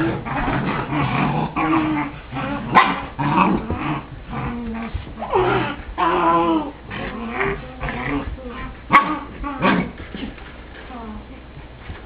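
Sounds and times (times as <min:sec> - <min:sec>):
puppy growling and barking: 0:00.0 - 0:10.5.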